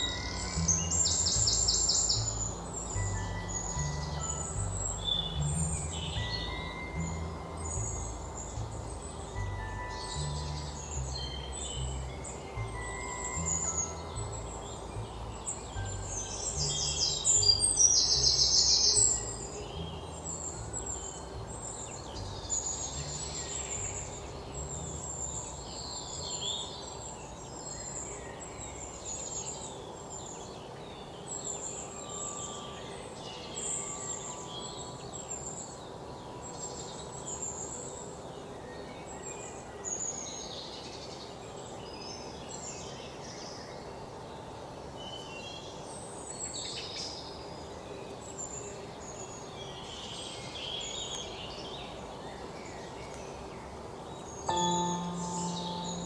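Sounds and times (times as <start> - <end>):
birds chirping and singing: 0.0 - 30.0
low steady background noise: 0.0 - 56.0.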